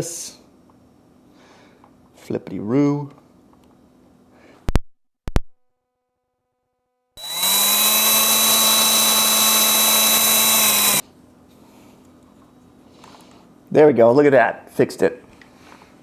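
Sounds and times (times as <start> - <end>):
chainsaw engine running at high revs: 7.2 - 11.0.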